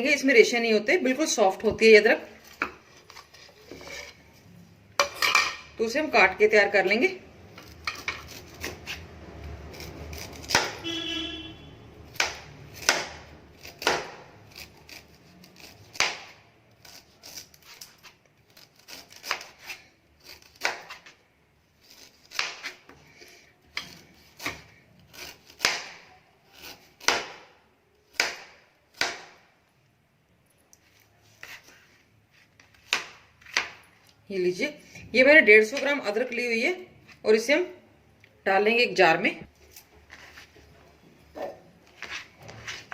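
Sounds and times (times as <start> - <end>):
knife chopping on board: 9.8 - 10.8, 12.1 - 16.4, 23.7 - 26.0, 26.6 - 27.5, 28.1 - 29.4.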